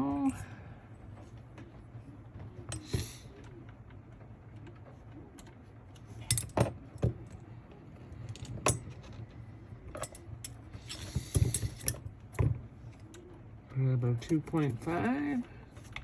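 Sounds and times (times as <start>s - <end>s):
metal tools clicking and knocking: 6.2s - 7.4s, 8.2s - 9.3s, 9.9s - 13.1s.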